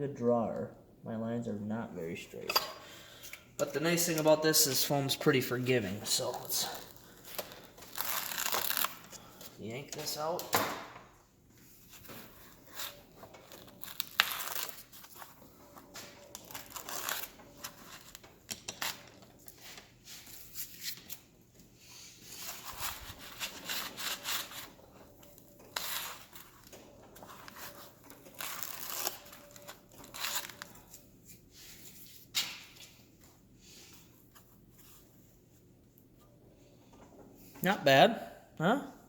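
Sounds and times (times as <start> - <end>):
foam being torn: 7.8 - 9.0, 13.8 - 15.0, 16.4 - 17.3, 28.4 - 29.3.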